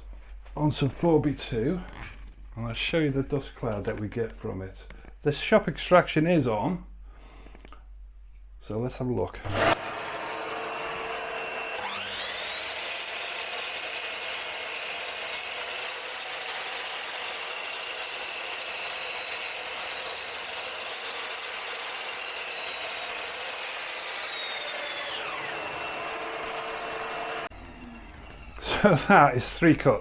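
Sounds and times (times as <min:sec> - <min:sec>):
mitre saw motor whining: 0:09.4 - 0:30.0
shop vac running: 0:09.4 - 0:30.0.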